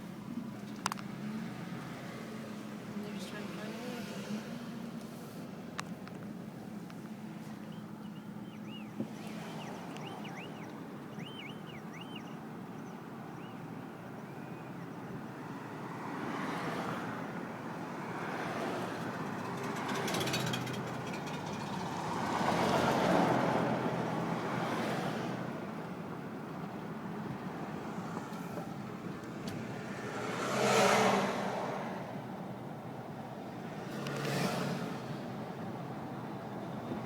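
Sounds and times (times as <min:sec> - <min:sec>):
road vehicles passing: 0:00.0 - 0:37.0.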